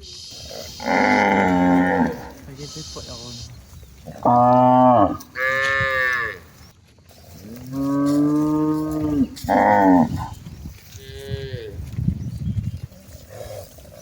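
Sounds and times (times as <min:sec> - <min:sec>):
cattle mooing: 0:00.6 - 0:02.5, 0:04.1 - 0:06.5, 0:07.5 - 0:10.3.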